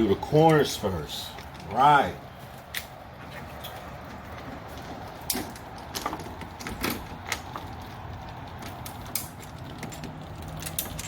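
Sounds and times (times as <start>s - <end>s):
clicks and knocks of bolts: 4.8s - 11.0s.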